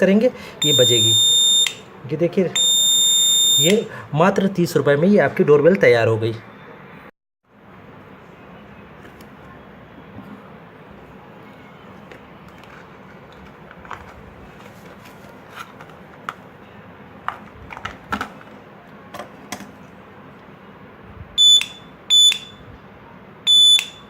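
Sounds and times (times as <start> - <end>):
shrill buzzer beeps: 0.6 - 1.8, 2.6 - 3.9, 21.4 - 22.6, 23.5 - 24.0.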